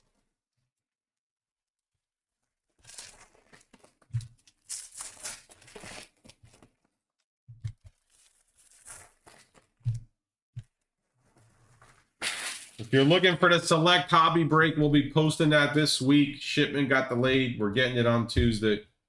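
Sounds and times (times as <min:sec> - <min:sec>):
foil wrappers tearing and crinkling: 0:02.8 - 0:06.8, 0:07.9 - 0:09.8, 0:12.2 - 0:13.0.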